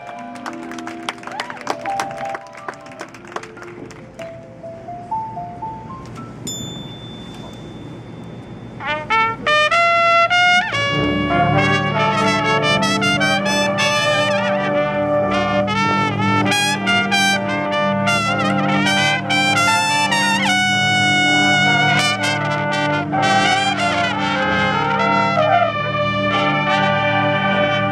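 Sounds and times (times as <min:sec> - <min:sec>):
brass line playing loudly: 0:08.8 - 0:27.9.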